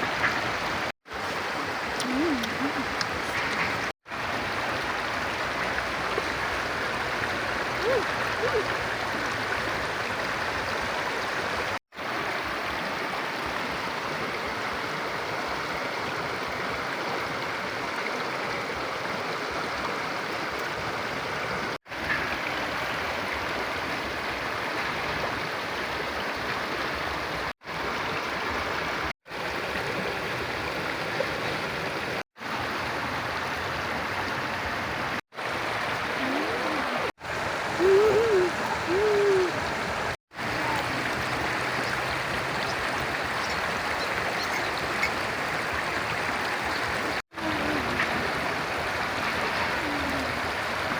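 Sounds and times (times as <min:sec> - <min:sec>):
river water rushing: 0:00.0 - 0:50.9
rising-and-falling calls: 0:37.7 - 0:39.8.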